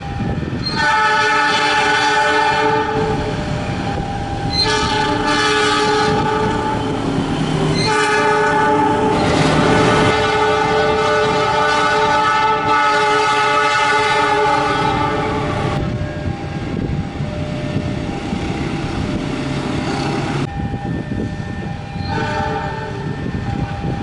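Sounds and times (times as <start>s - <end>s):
train rumble: 0.0s - 24.0s
locomotive horn blasts: 0.6s - 3.3s, 4.4s - 7.0s, 7.7s - 15.9s, 22.0s - 23.1s.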